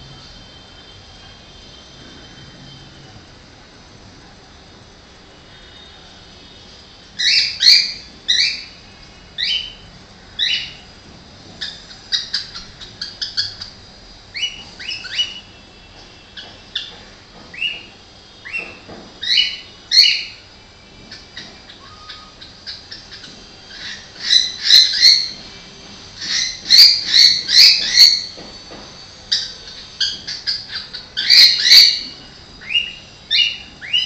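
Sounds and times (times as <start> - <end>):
cockatiel chirps and whistles: 21.1 - 25.4.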